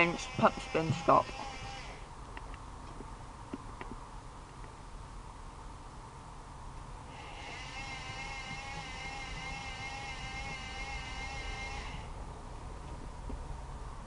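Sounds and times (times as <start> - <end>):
washing machine motor whining: 7.2 - 12.1.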